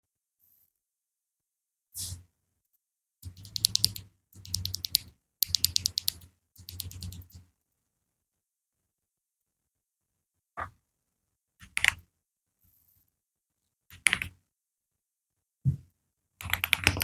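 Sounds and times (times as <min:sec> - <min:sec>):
mechanical keyboard typing: 0:03.2 - 0:07.4, 0:13.9 - 0:14.3, 0:16.4 - 0:17.0.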